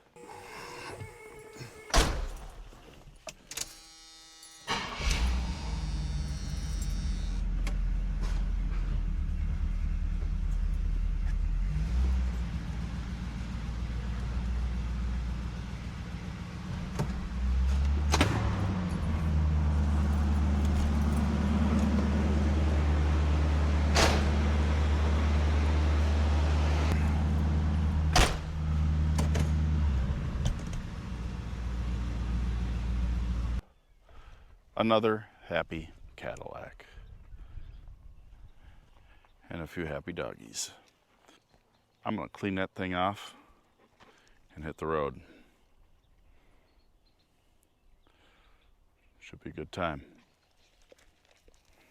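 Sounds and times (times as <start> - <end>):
car engine running: 4.7 - 33.6.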